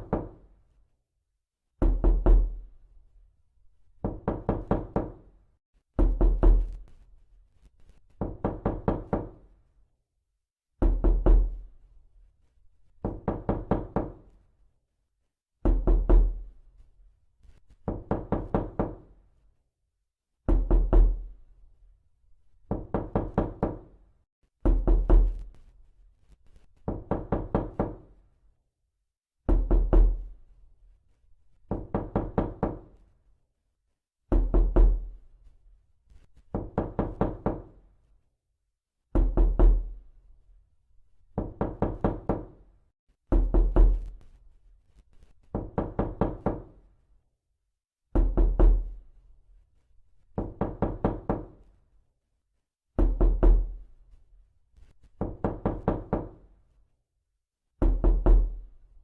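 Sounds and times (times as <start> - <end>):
knuckles knocking on door: 0.0 - 0.4, 4.0 - 5.2, 8.2 - 9.4, 13.0 - 14.2, 17.9 - 19.0, 22.7 - 23.8, 26.9 - 28.0, 31.7 - 32.9, 34.3 - 35.0, 36.5 - 37.7, 39.2 - 39.9, 41.4 - 42.6, 43.3 - 44.1, 45.5 - 46.8, 48.2 - 48.9, 50.4 - 51.5, 53.0 - 53.7, 55.2 - 56.4, 57.8 - 58.6.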